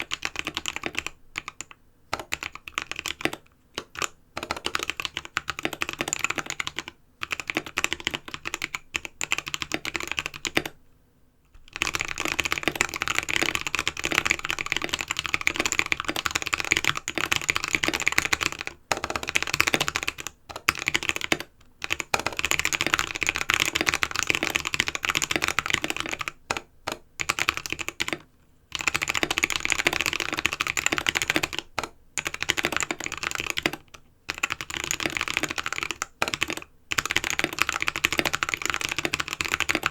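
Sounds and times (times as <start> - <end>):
mechanical keyboard typing: 0.0 - 10.8, 11.6 - 39.9.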